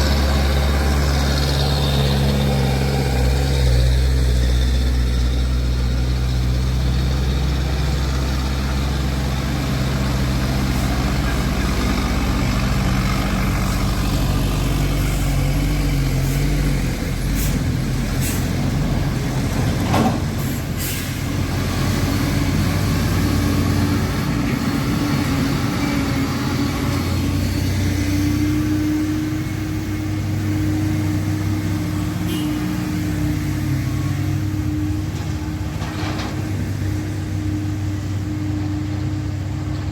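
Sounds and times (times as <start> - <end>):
truck diesel engine running: 0.0 - 39.9
air brake hisses: 17.3 - 18.6, 20.4 - 21.3.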